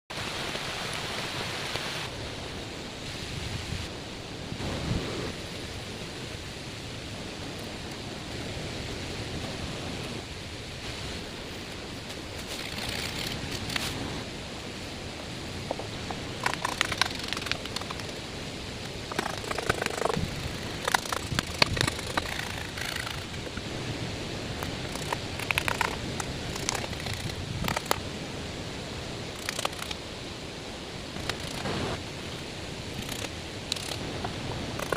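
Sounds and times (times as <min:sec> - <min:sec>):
steady outdoor hiss: 0:00.1 - 0:34.9
rustling: 0:15.8 - 0:23.8
snaps and clicks: 0:29.3 - 0:30.0, 0:31.2 - 0:31.7.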